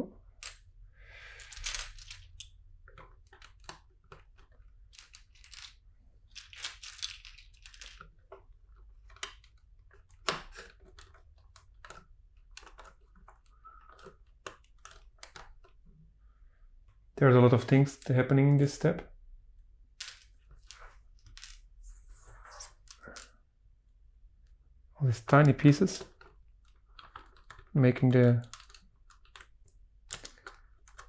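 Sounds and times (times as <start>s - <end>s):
plastic bricks clicking and rattling: 1.4s - 15.9s, 25.4s - 31.0s.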